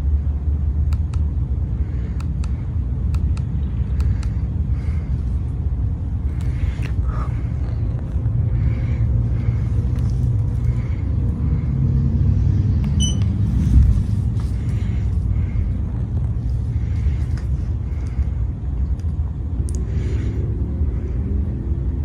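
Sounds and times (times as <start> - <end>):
ceiling fan air rumble: 0.0 - 22.0
soft fan swish: 1.5 - 21.9
short high beep: 13.0 - 13.3.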